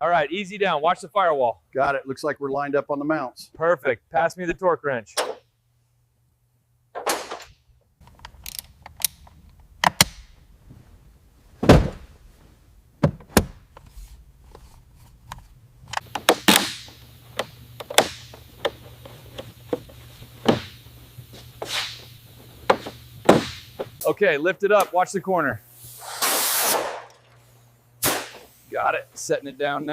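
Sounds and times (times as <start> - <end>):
low steady hum: 0.0 - 26.0, 26.9 - 29.9
metal clanks and thunks: 11.6 - 12.1
rushing air burst: 21.6 - 22.3, 25.7 - 28.8.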